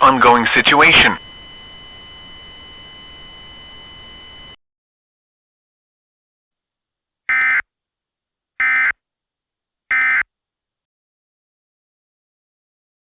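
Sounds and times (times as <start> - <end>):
digital data tone blasts: 0.0 - 4.5.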